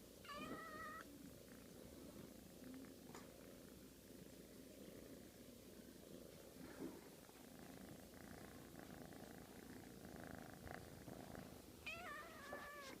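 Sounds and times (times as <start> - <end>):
cat meowing: 0.2 - 1.1, 11.8 - 13.0
cat purring: 0.3 - 13.0.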